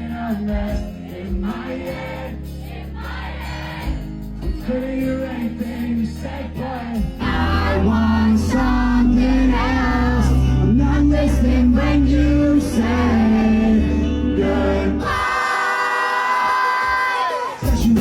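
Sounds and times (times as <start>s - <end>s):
heavy bass: 0.0s - 15.4s
live rock band playing: 6.6s - 15.2s
person singing: 6.6s - 18.0s.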